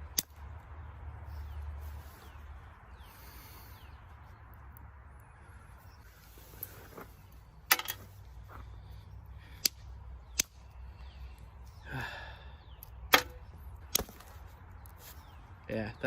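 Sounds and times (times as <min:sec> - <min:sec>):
soft rustle: 0:06.0 - 0:08.9, 0:14.1 - 0:15.4.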